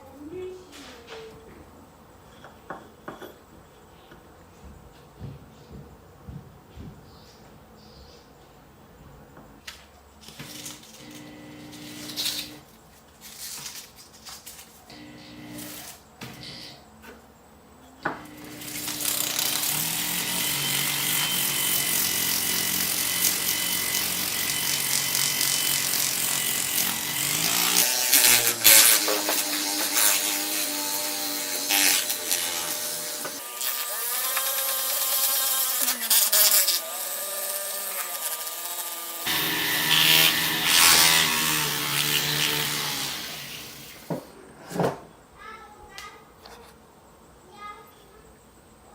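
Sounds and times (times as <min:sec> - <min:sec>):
electric power tool motor running: 0:10.3 - 0:12.6, 0:14.9 - 0:16.8, 0:18.1 - 0:44.2.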